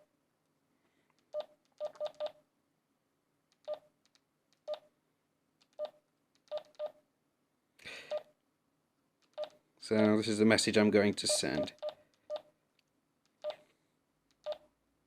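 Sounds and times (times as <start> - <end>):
radio keypad beeps: 11.3 - 12.4.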